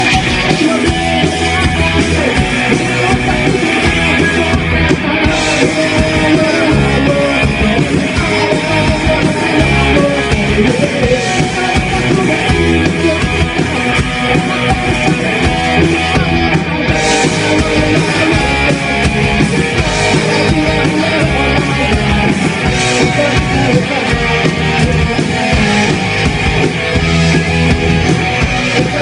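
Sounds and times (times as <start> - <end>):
live rock band playing: 0.0 - 29.0.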